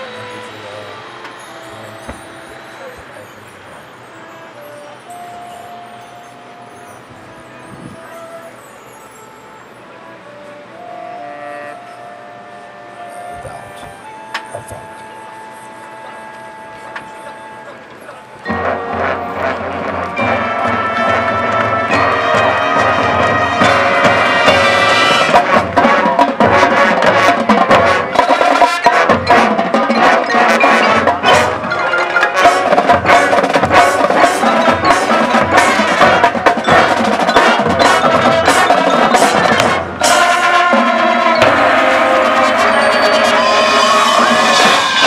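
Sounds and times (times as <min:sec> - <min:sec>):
marching band playing: 0:00.0 - 0:45.0
rapid drum strikes: 0:18.5 - 0:45.0.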